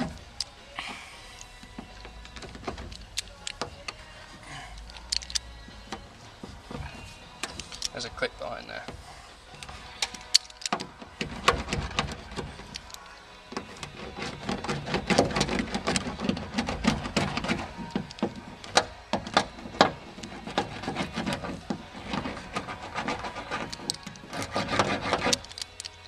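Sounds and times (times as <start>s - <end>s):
hands rubbing deadening sheet: 20.1s - 25.8s.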